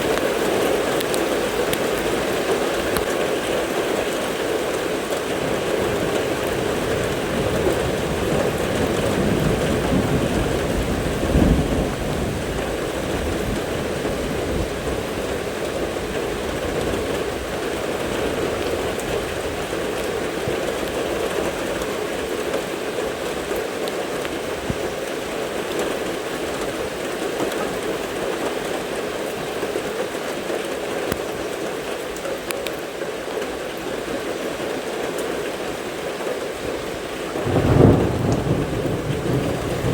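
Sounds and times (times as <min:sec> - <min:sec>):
steady rain: 0:00.0 - 0:39.9
thunder rumbling: 0:05.3 - 0:21.6, 0:37.3 - 0:39.9.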